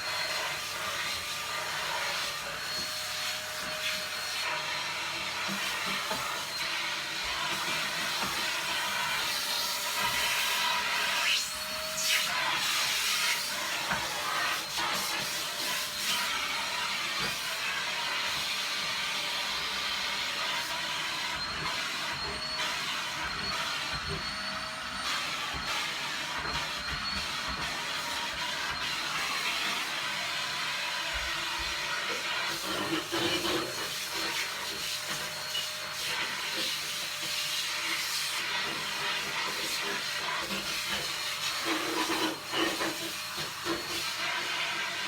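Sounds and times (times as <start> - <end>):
vacuum cleaner running: 0.0 - 45.0.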